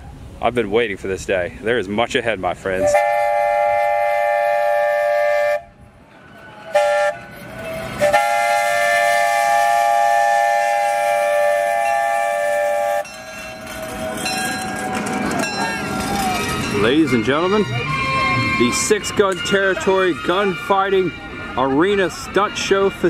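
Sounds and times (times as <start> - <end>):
train whistle blowing: 2.8 - 5.8, 6.7 - 7.3, 8.0 - 14.8, 16.0 - 23.0.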